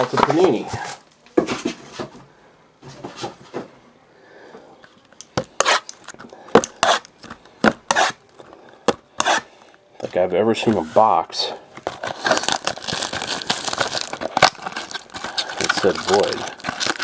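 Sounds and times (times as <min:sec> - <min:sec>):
wrapping crackling: 0:11.5 - 0:17.0
cardboard box being torn open: 0:11.9 - 0:17.0.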